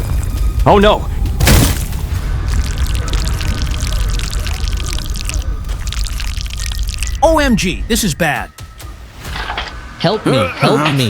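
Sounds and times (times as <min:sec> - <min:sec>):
volcano eruption burst: 0:01.4 - 0:06.9.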